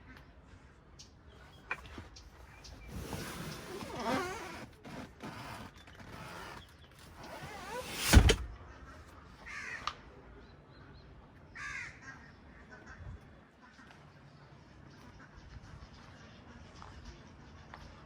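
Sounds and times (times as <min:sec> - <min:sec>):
rustling handling noise: 0:01.4 - 0:08.5
car trunk lid thud: 0:06.2 - 0:08.5.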